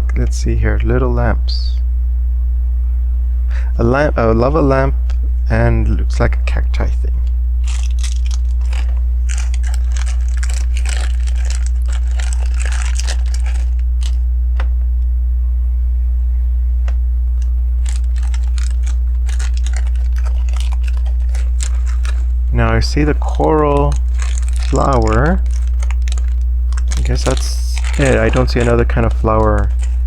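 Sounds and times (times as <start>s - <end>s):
low electrical hum: 0.0s - 30.0s
plastic pieces clicking and rattling: 7.6s - 14.2s, 17.4s - 30.0s.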